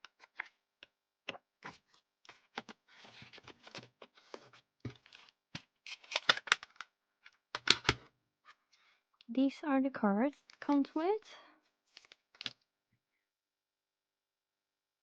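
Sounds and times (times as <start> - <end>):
plastic cases clicking: 5.9 - 6.9, 7.5 - 8.1.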